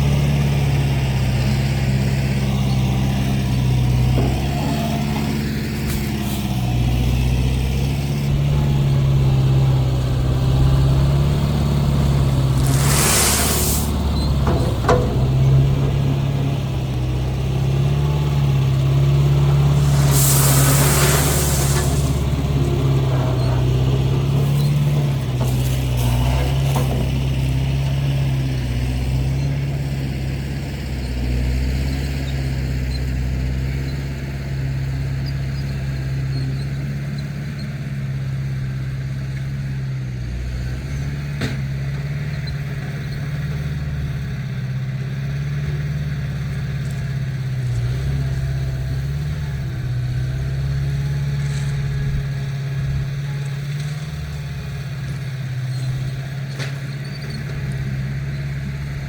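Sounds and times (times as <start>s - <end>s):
heavy machinery engine running: 0.0s - 59.0s
brief hiss: 12.2s - 15.5s, 19.4s - 23.0s.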